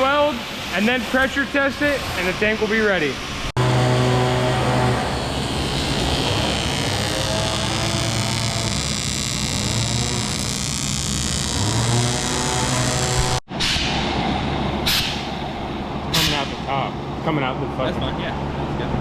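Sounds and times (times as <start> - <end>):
welder buzzing: 0.0 - 13.5.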